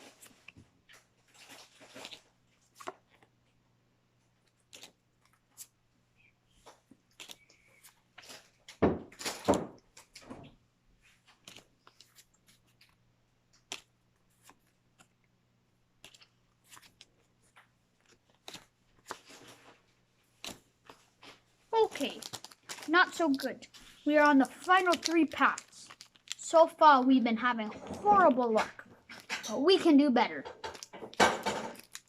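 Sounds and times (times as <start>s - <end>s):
cards snapping and rustling: 0.1s - 3.3s, 4.4s - 5.8s, 6.6s - 10.2s, 11.2s - 15.2s, 16.0s - 26.8s, 30.5s - 32.0s
foil packs crinkling: 21.8s - 26.8s, 30.6s - 32.0s.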